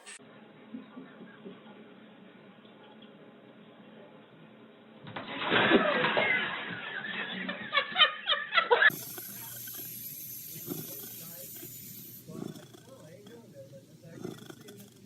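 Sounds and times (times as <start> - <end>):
person laughing in rapid bursts: 5.4 - 9.2.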